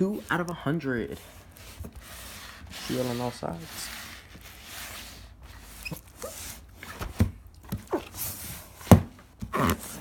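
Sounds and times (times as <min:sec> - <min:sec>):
plastic wrap rubbing and squeaking: 0:00.0 - 0:06.9
dull knocks on cardboard box: 0:08.8 - 0:09.2.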